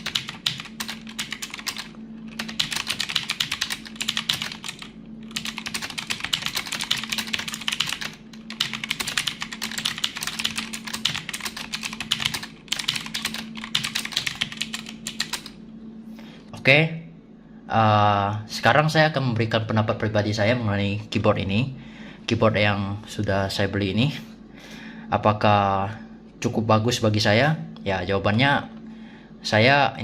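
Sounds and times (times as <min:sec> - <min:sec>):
fast mechanical keyboard typing: 0:00.0 - 0:15.6.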